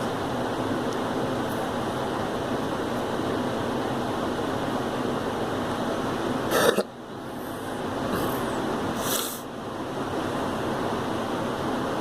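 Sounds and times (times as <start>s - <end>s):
steady background noise: 0.0s - 12.0s
girl coughing: 6.5s - 6.9s.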